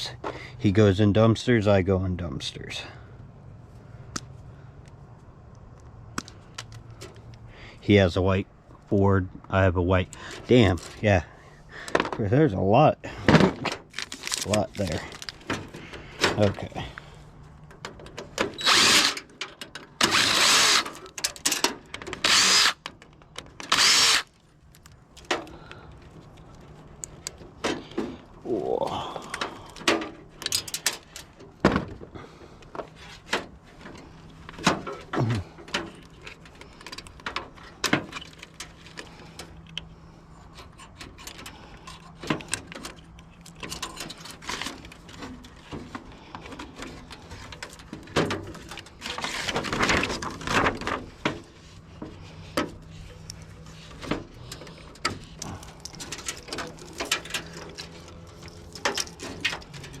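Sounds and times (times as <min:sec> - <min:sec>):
metal parts clanking: 0:17.7 - 0:25.5, 0:29.3 - 0:31.9, 0:40.5 - 0:51.4, 0:53.3 - 1:00.0
scraping and rattling metal: 0:40.4 - 1:00.0.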